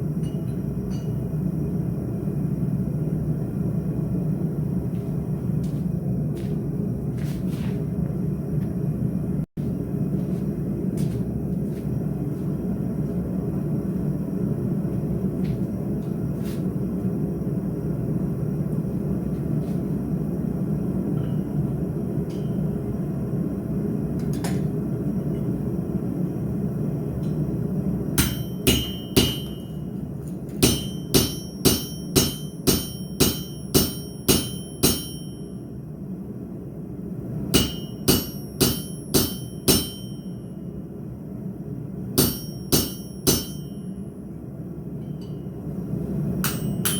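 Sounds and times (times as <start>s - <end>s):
hammer ringing on anvil: 0.2s - 1.3s, 28.2s - 29.9s, 30.6s - 35.7s, 37.6s - 40.7s, 42.2s - 44.0s, 45.0s - 45.6s, 46.4s - 46.9s.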